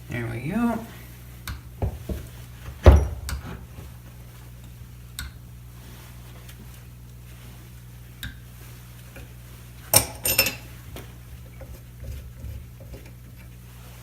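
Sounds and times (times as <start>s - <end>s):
thump on workbench: 1.8s - 3.4s.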